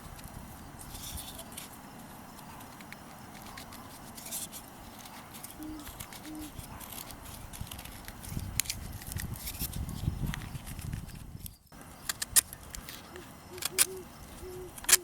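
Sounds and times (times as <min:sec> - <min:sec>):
rustling: 0:00.0 - 0:15.0
small objects clicking: 0:02.6 - 0:09.8.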